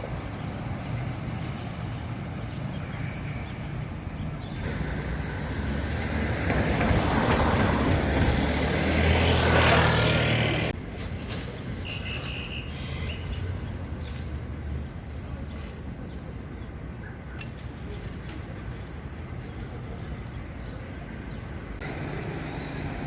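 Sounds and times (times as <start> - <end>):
street traffic: 0.0 - 23.0
motor vehicle passing close by: 4.7 - 10.8.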